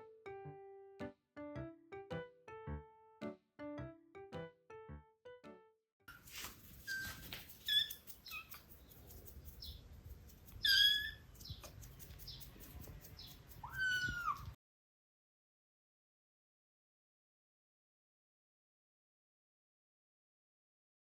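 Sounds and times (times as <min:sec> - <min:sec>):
kittens mewing: 0:13.5 - 0:14.6.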